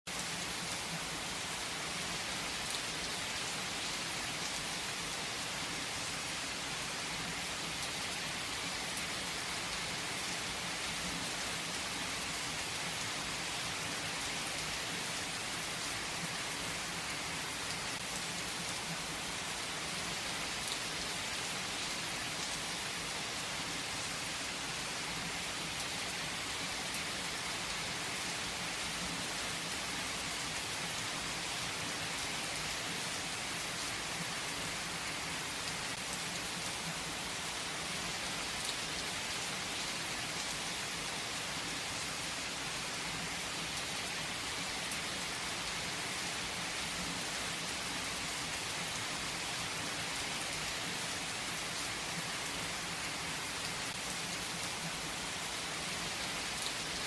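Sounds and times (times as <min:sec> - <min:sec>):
heavy rain on leaves: 0:00.1 - 0:57.0.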